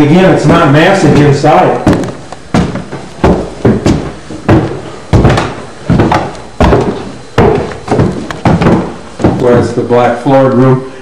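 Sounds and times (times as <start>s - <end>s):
heavy footsteps on stairs: 0.0s - 9.8s.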